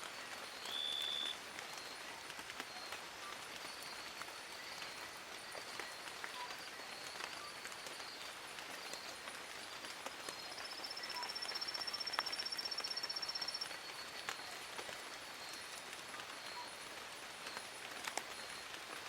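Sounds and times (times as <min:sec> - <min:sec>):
rain on foliage: 0:00.0 - 0:19.0
faint high chirping: 0:10.4 - 0:14.0.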